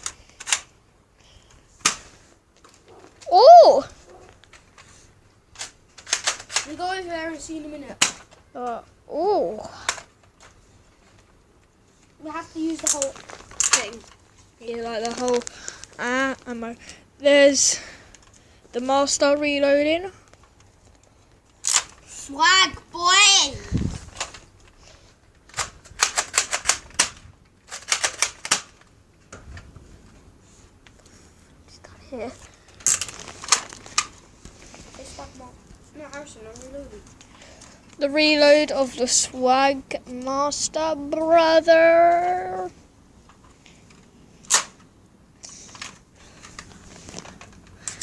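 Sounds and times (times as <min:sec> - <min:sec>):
sharp plastic clicks: 0:00.0 - 0:00.8, 0:01.4 - 0:03.0, 0:05.5 - 0:06.8, 0:07.9 - 0:08.8, 0:12.7 - 0:16.5, 0:20.3 - 0:22.1, 0:24.1 - 0:29.7, 0:43.3 - 0:48.0
sharp plastic snap: 0:01.8 - 0:02.8, 0:08.0 - 0:08.4, 0:44.4 - 0:44.9
toy blaster reloading clicks: 0:05.6 - 0:06.8, 0:21.6 - 0:22.0, 0:25.5 - 0:28.7, 0:44.5 - 0:44.8.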